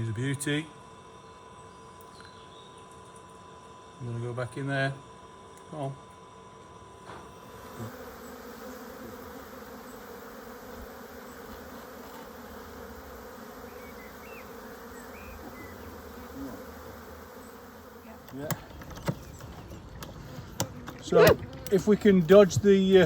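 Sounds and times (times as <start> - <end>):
honeybees buzzing: 6.2 - 23.0.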